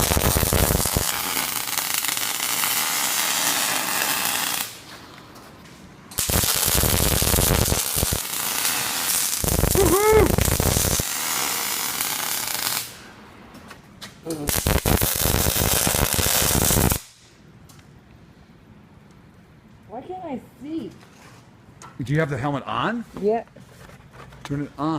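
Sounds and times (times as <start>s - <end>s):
arc welding crackling: 0.0s - 4.9s, 6.1s - 13.1s, 14.3s - 17.3s.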